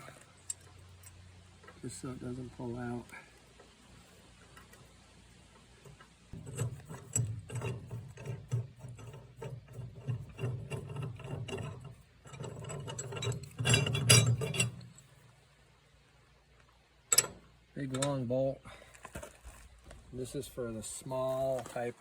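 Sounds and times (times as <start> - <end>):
metal bolt clicking and rattling: 5.6 - 15.1, 17.1 - 18.2.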